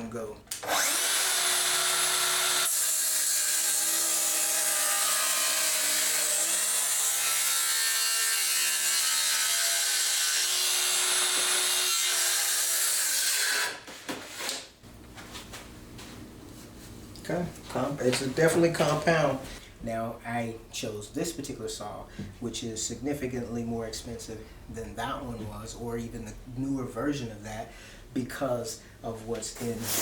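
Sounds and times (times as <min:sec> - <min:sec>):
circular saw cutting wood: 0:00.6 - 0:13.8.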